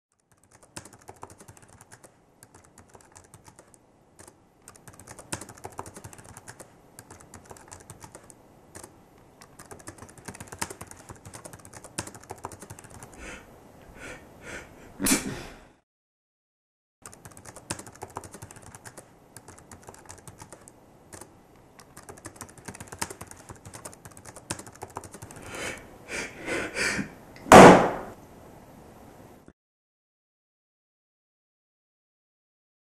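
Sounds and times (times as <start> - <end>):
computer keyboard typing: 0.1 - 13.2, 17.0 - 25.5
person gasping before sneeze: 14.0 - 15.8, 25.5 - 27.2
sneeze: 15.0 - 15.7.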